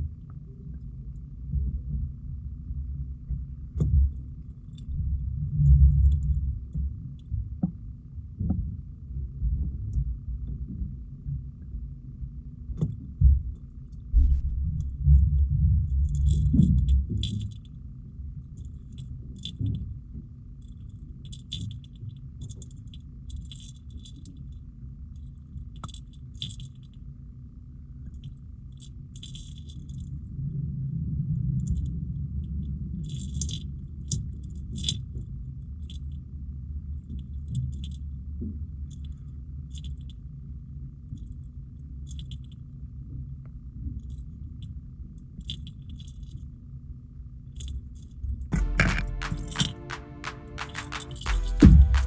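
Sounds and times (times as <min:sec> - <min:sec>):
steady low hum: 0:11.8 - 0:16.4.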